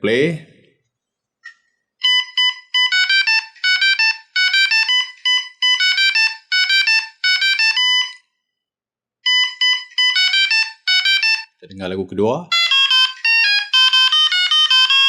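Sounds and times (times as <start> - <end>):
electronic beeping ringtone melody: 2.0 - 8.2, 9.2 - 11.6, 12.5 - 15.0.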